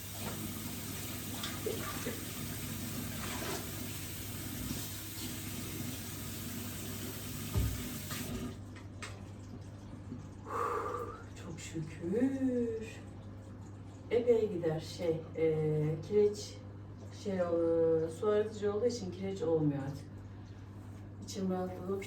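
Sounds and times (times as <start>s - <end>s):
water running from a tap: 0.0s - 10.4s
dull knock: 7.5s - 7.9s.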